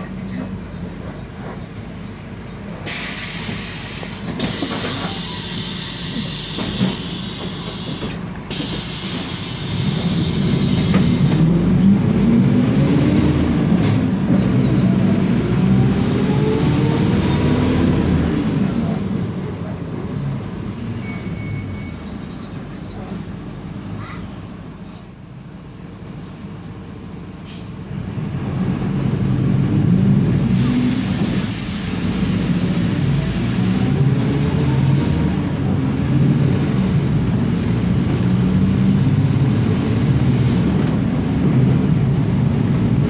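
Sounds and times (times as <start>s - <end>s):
bus diesel engine revving: 2.9s - 21.8s, 27.6s - 43.0s.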